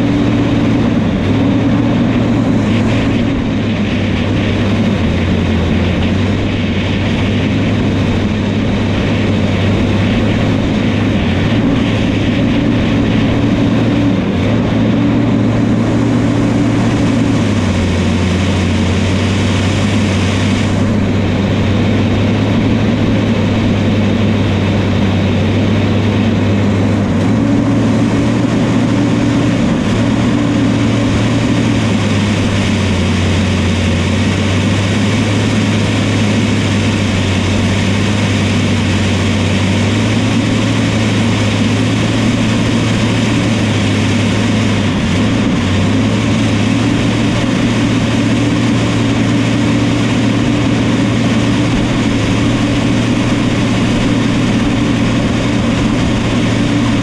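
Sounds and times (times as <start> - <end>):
diesel engine at high throttle: 0.0 - 57.0.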